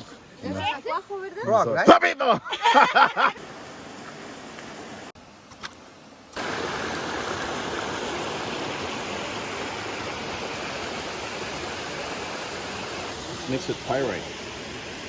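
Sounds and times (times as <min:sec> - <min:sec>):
rushing water: 0:02.6 - 0:05.2, 0:06.4 - 0:15.0.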